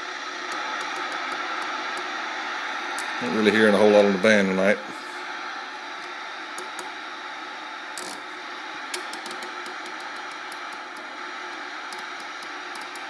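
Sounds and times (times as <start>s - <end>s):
radio static hiss: 0.0s - 13.0s
faint crackles and pops: 0.1s - 3.2s, 5.2s - 13.0s.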